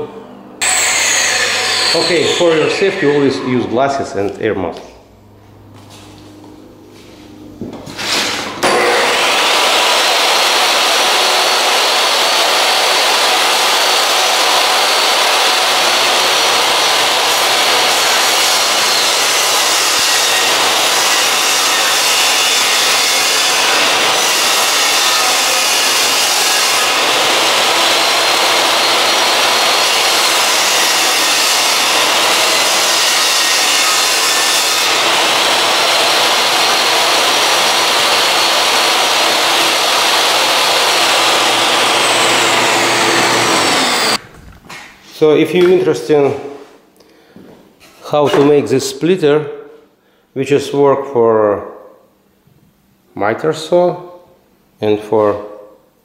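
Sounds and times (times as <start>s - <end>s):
electric power saw cutting wood: 0.6s - 3.8s, 8.0s - 44.4s.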